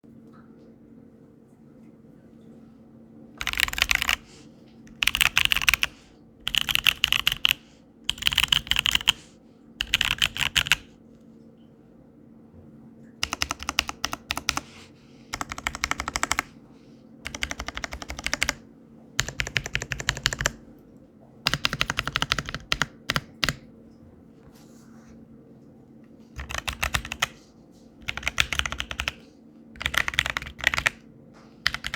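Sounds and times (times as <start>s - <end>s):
mechanical keyboard typing: 3.4s - 10.9s, 13.2s - 16.5s, 17.2s - 18.6s, 19.2s - 20.6s, 21.5s - 23.6s, 26.4s - 27.4s, 28.0s - 29.2s, 29.8s - 31.0s, 31.6s - 31.9s.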